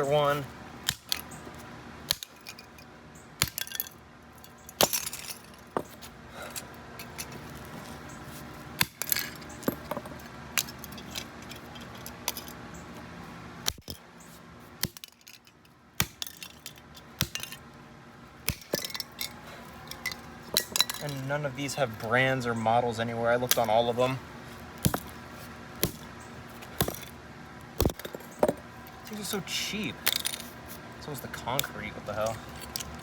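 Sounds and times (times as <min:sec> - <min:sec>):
metal pieces clinking: 0:02.1 - 0:05.8, 0:06.4 - 0:07.7, 0:08.9 - 0:12.6, 0:15.0 - 0:17.6, 0:18.5 - 0:21.3, 0:30.0 - 0:30.6
metal striking concrete: 0:24.8 - 0:25.2, 0:26.8 - 0:27.1, 0:27.8 - 0:28.6.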